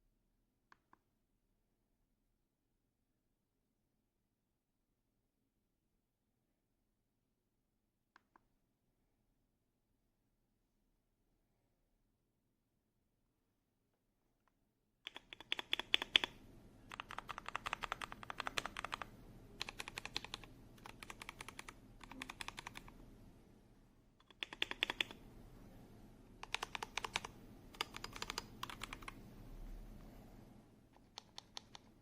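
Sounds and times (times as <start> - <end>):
mechanical keyboard typing: 15.1 - 23.0, 24.2 - 25.2, 26.4 - 29.2, 31.0 - 32.0.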